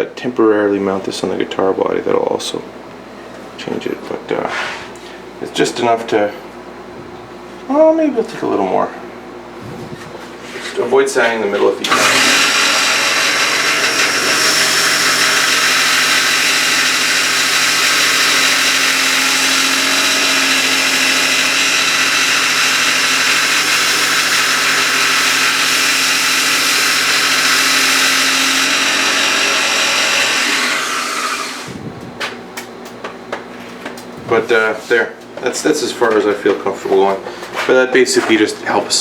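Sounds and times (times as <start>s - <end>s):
power tool motor whining: 11.8s - 31.8s.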